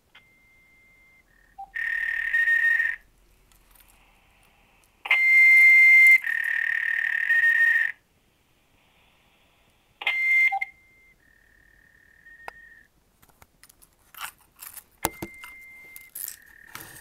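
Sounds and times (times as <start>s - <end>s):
high-pitched electronic beeps: 15.1s - 17.0s.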